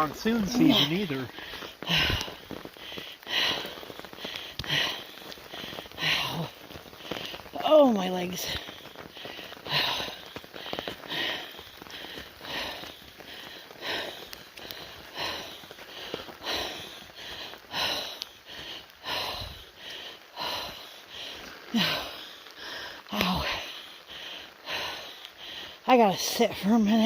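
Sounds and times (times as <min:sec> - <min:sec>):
person breathing hard: 0:00.6 - 0:07.5, 0:08.5 - 0:25.9.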